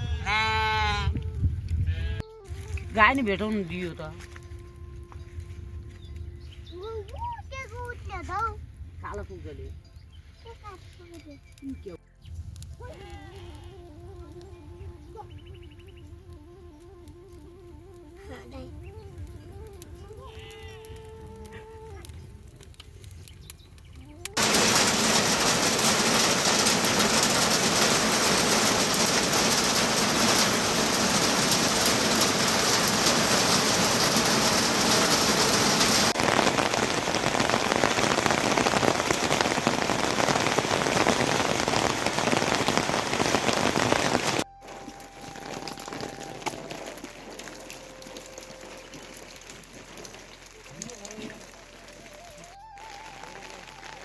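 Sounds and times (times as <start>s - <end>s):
heavy rain falling: 24.3s - 54.0s.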